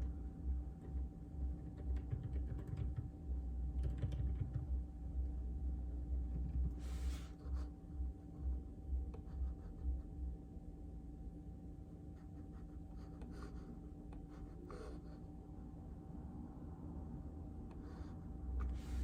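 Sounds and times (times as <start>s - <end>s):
typing on mechanical keyboard: 1.5s - 3.1s, 3.7s - 4.7s.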